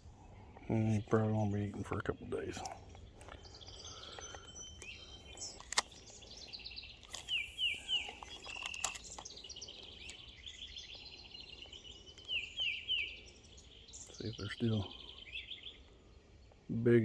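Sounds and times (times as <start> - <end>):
outdoor background noise: 0.0 - 17.0
songbirds chirping and singing: 0.0 - 17.0
sharp click: 4.3 - 6.0, 7.0 - 9.4.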